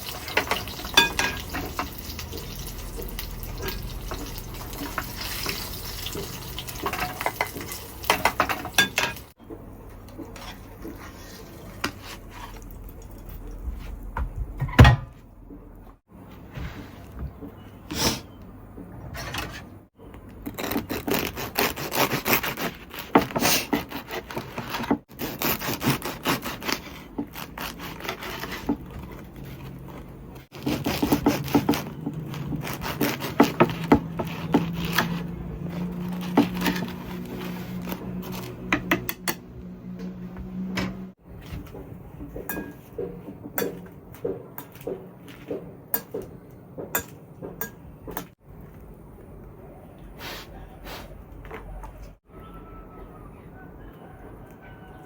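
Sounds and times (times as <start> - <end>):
scraping and rubbing strokes: 23.5 - 38.6.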